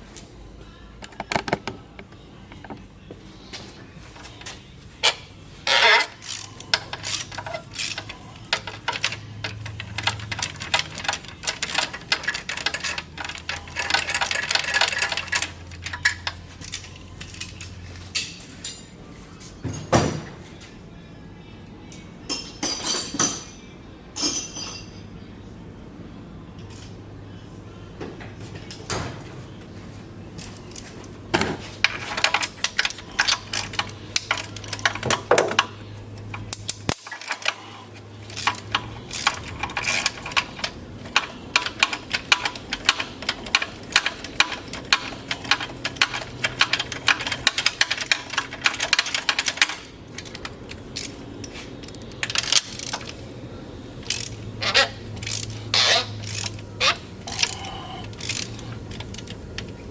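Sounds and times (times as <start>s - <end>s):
metal parts and tools clinking: 4.2s - 18.9s, 21.9s - 25.2s, 30.4s - 53.3s, 54.0s - 59.9s
steady low hum: 23.4s - 59.9s.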